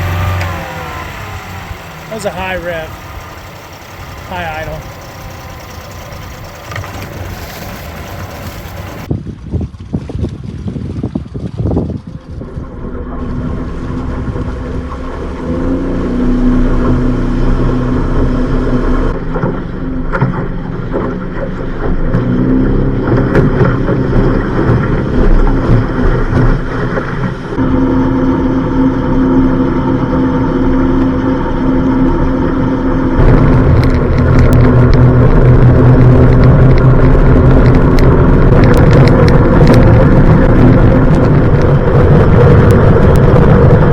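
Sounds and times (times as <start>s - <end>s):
outboard engine high idle: 0.0s - 9.1s, 12.0s - 43.9s.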